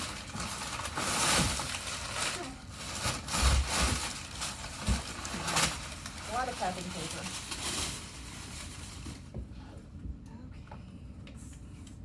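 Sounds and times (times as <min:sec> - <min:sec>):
packing paper rustling: 0:00.0 - 0:09.3.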